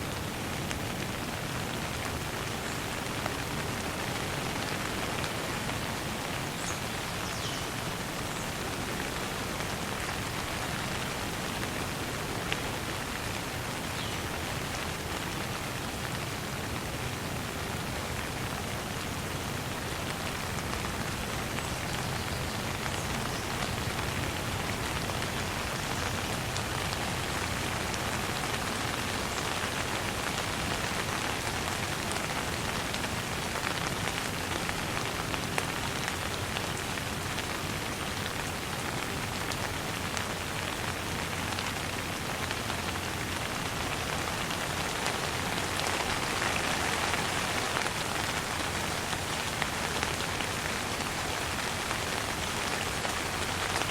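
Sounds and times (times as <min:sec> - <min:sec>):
light rain falling: 0:00.0 - 0:53.9.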